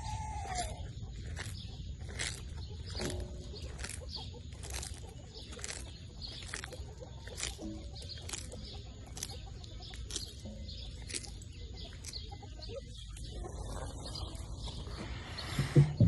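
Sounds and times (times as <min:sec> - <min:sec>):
tortoise crunching lettuce: 0:00.0 - 0:15.8.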